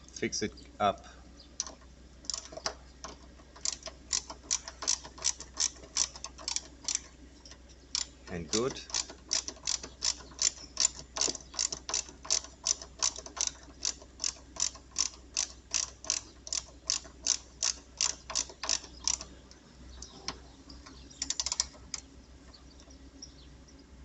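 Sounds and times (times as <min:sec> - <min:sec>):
ratchet wrench clicking: 0:01.6 - 0:19.3, 0:21.2 - 0:22.1.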